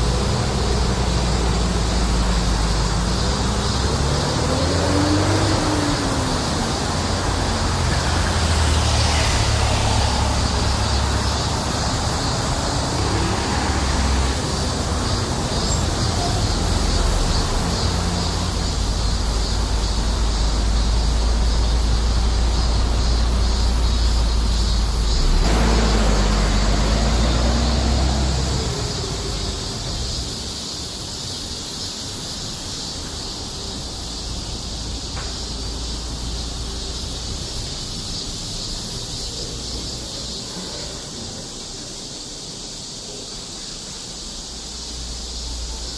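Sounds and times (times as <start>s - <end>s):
vehicle passing: 0.0s - 31.2s
cicadas chorus: 0.0s - 45.9s
road traffic rumble: 0.0s - 45.9s.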